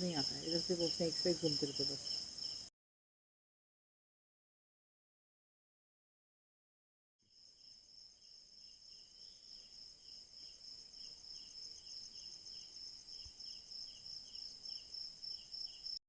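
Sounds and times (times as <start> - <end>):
insect chirping: 0.0 - 2.7, 7.2 - 16.0
insect pulsing trill: 7.3 - 16.0.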